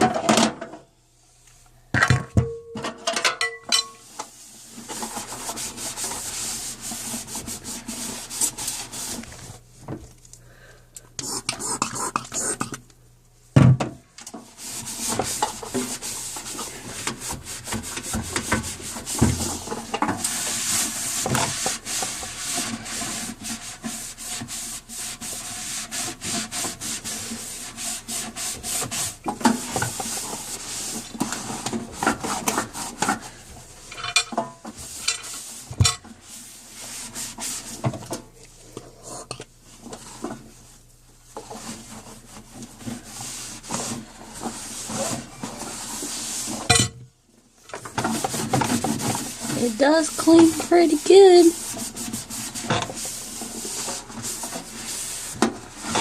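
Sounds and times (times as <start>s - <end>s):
scrubbing inside a microwave: 47.8s - 56.0s.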